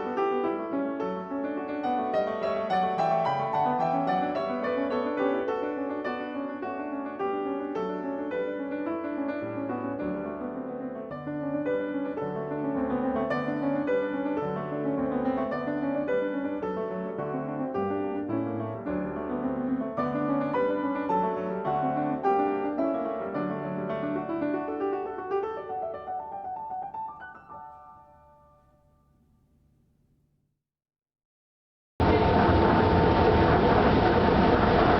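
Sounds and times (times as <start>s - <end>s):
piano music: 0.0s - 29.7s.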